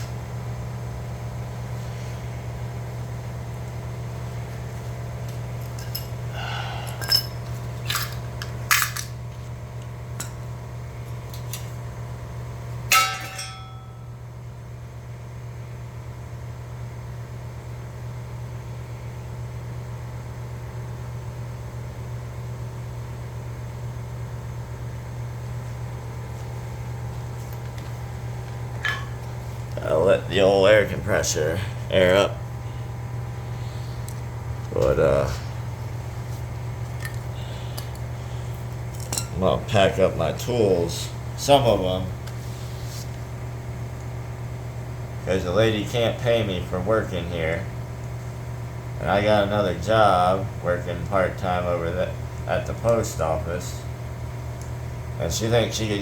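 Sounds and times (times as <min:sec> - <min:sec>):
steady low hum: 0:00.0 - 0:56.0
metallic clinks and knocks: 0:05.7 - 0:06.2, 0:12.9 - 0:13.9, 0:28.8 - 0:29.3.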